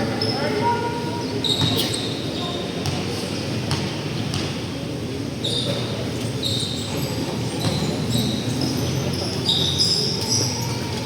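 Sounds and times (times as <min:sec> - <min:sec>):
sneaker squeaks on floor: 0:01.4 - 0:03.0, 0:05.4 - 0:10.7
basketball bouncing: 0:03.7 - 0:04.5
crowd murmur: 0:04.6 - 0:11.0.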